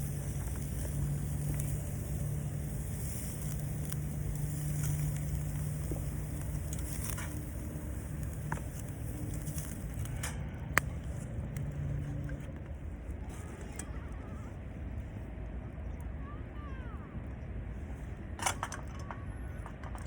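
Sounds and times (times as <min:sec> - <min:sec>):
campfire crackling: 0:00.0 - 0:15.1
low hum: 0:00.0 - 0:20.0.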